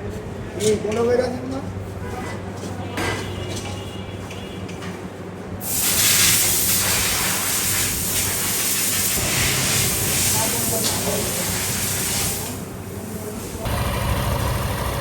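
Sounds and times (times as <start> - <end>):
loud spraying hiss: 5.6 - 13.7.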